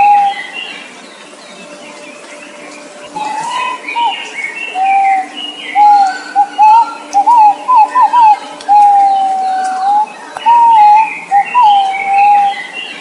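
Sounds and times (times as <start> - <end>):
faint high bird chirps: 0.0 - 13.0
bird whistling clear notes: 3.2 - 12.7.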